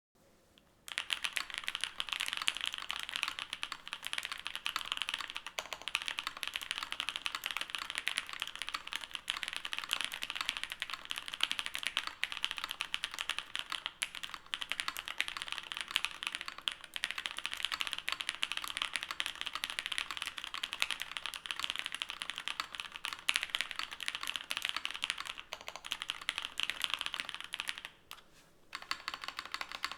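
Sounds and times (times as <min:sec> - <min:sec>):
mechanical keyboard typing: 0:00.9 - 0:29.9.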